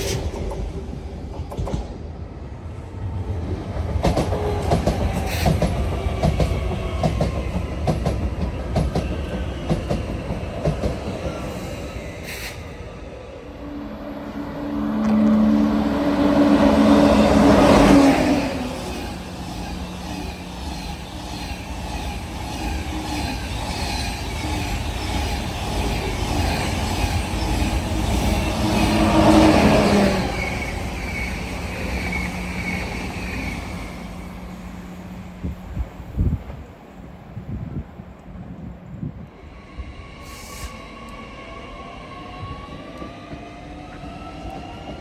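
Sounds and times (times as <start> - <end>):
train passing on tracks: 0.0 - 45.0.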